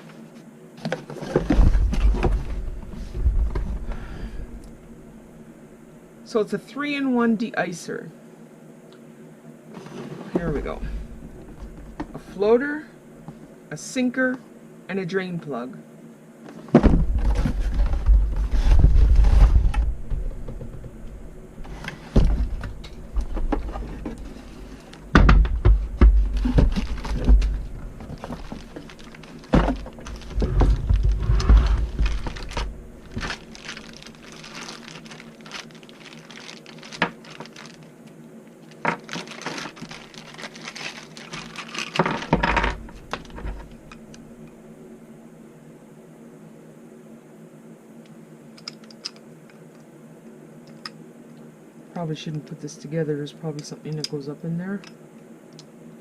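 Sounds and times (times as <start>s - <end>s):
knocks and thunks of handling: 0.8s - 4.2s, 9.8s - 12.2s, 16.5s - 35.7s, 38.8s - 44.0s
packaging rustling: 17.1s - 44.2s.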